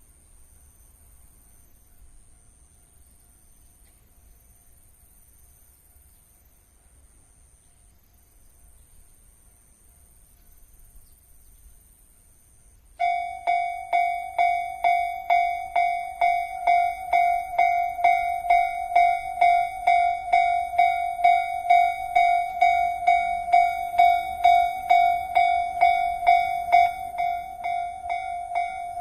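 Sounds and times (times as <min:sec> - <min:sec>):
level-crossing warning bell: 0:13.0 - 0:29.0.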